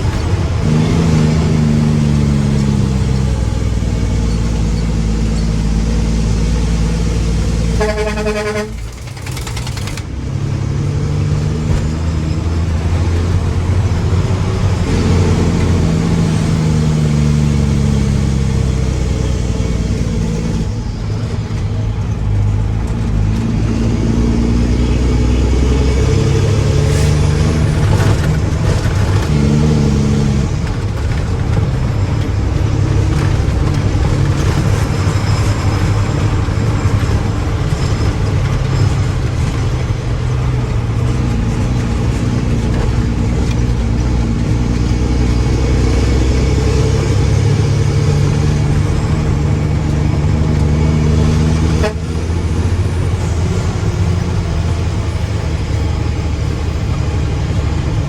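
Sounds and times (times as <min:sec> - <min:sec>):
diesel truck engine revving: 0:00.0 - 0:58.0
truck horn toot: 0:07.6 - 0:09.4, 0:51.6 - 0:52.6.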